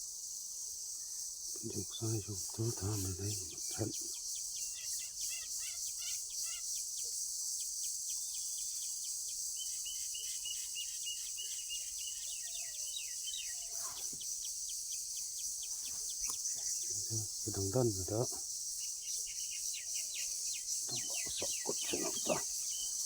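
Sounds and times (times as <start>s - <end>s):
high-pitched insect chorus: 0.0s - 23.0s
birds chirping: 1.6s - 4.1s, 15.6s - 23.0s.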